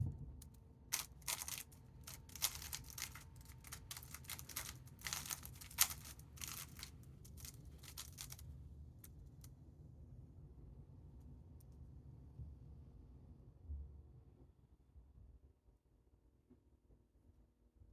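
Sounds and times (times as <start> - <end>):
puzzle cube clicking: 0.9 - 8.4.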